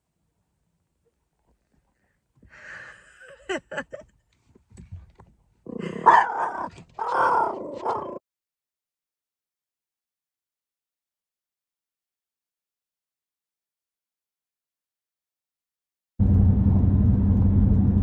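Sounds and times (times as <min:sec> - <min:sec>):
dog barking: 0:05.8 - 0:08.2.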